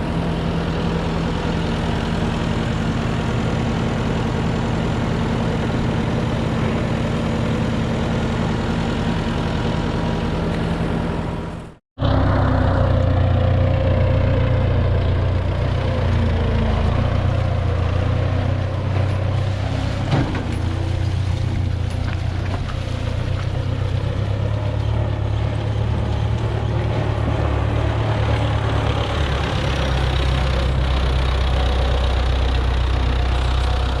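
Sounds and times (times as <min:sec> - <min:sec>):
heavy machinery engines humming: 0:00.0 - 0:34.0
louder engine: 0:00.0 - 0:34.0.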